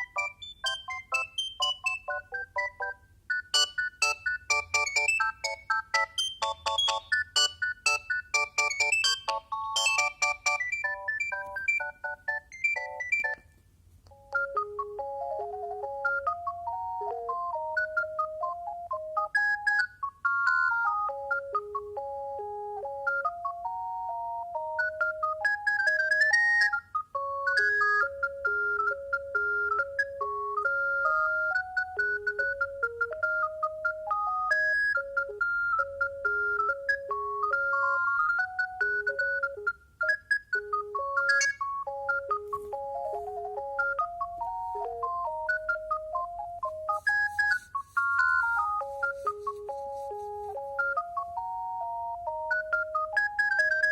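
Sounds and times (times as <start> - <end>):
phone ringtone electronic melody: 0.0 - 53.9.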